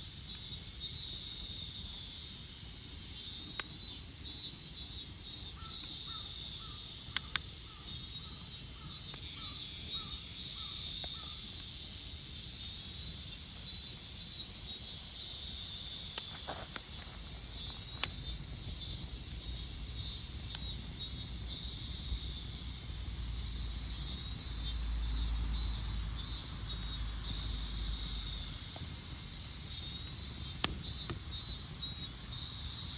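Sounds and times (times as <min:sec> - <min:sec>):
insects buzzing: 0:00.0 - 0:32.9
sharp clicks: 0:07.1 - 0:07.5, 0:17.7 - 0:19.1, 0:30.5 - 0:31.4.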